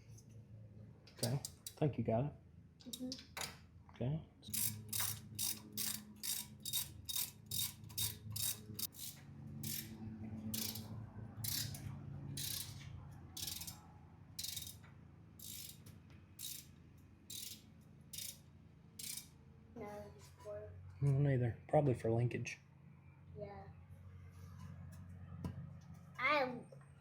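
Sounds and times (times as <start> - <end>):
hand ratchet clicking: 1.2 - 1.8, 4.5 - 12.8, 13.4 - 13.8, 14.4 - 14.8, 15.4 - 18.4, 19.0 - 19.3.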